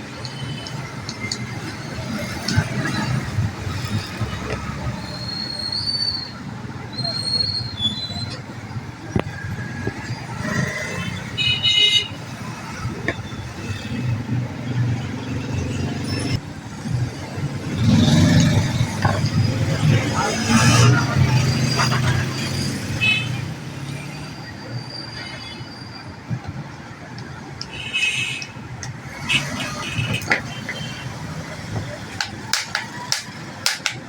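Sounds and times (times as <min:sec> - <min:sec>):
voices: 0:00.0 - 0:23.0
road traffic: 0:00.0 - 0:34.0.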